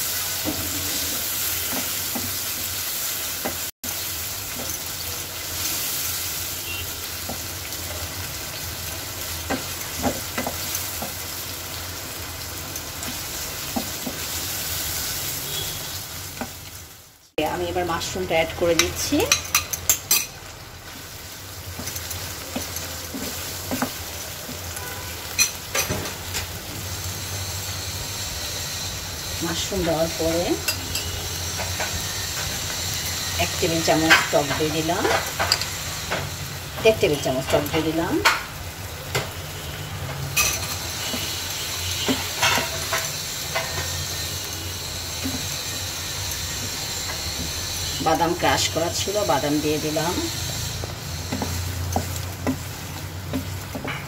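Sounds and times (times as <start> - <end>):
food sizzling in a pan: 0.0 - 54.0
utensil scraping a pan: 0.4 - 2.0.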